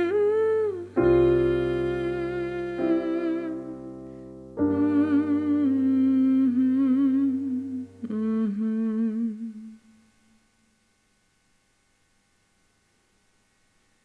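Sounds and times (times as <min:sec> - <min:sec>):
held keyboard chords: 0:00.0 - 0:08.5
person humming a melody: 0:00.0 - 0:10.2.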